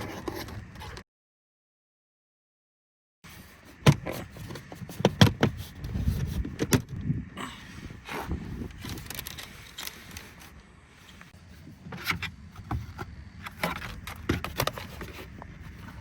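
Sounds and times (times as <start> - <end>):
rustling and scraping: 0.0 - 1.0, 3.3 - 7.0, 8.0 - 16.0.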